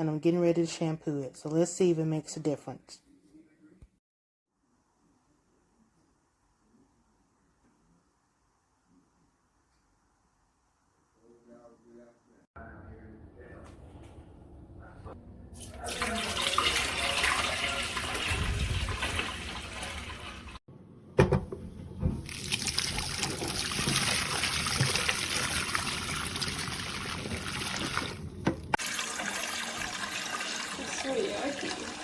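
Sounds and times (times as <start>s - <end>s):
water running and trickling: 15.6s - 20.6s, 22.2s - 32.0s.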